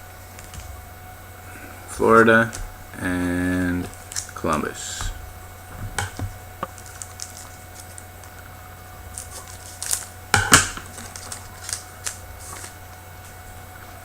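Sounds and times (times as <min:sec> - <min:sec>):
trading cards flipped through: 0:02.0 - 0:05.2, 0:05.8 - 0:08.4, 0:09.1 - 0:13.4.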